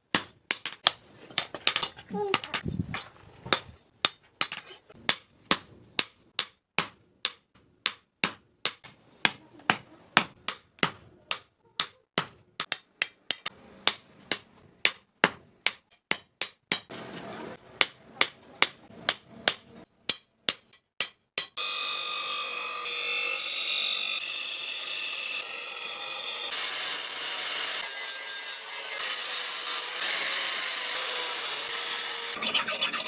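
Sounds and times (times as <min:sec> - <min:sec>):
hammer striking steel on anvil: 0:03.5 - 0:17.0, 0:17.8 - 0:21.7.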